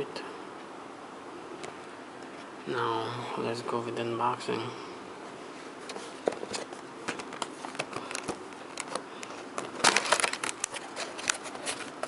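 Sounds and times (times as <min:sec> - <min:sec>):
rustling of packaging: 0:05.5 - 0:12.0
packaging crinkling: 0:06.2 - 0:12.0.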